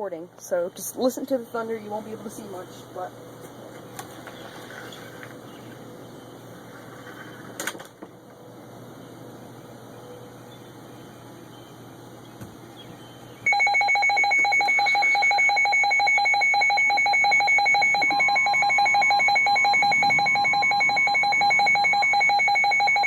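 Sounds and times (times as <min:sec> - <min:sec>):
steady alarm tone: 0:13.4 - 0:23.0
rapidly pulsing electronic beep: 0:13.5 - 0:23.0.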